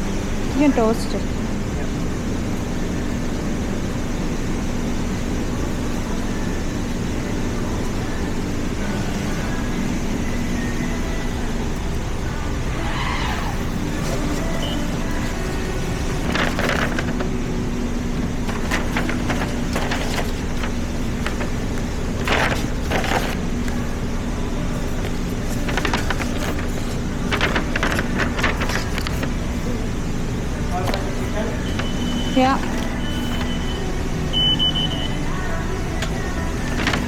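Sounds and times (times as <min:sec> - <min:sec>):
short rustling noises: 0:13.4 - 0:30.0, 0:30.7 - 0:33.8, 0:36.1 - 0:37.0.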